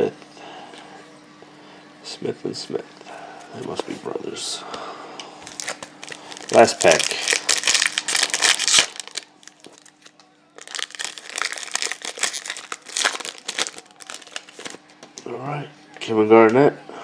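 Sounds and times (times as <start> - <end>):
wrapper tearing and crinkling: 5.4 - 14.8.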